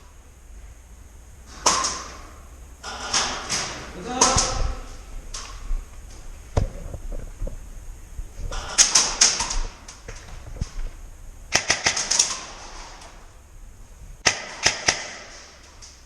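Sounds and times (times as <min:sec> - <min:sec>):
airsoft gun bursts: 0:11.5 - 0:13.0, 0:14.2 - 0:15.6.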